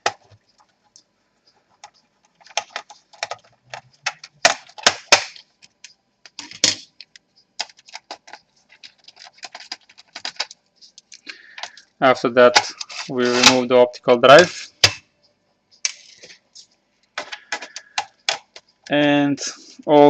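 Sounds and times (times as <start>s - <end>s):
plastic laptop parts clicking: 1.8s - 11.9s, 17.1s - 18.7s.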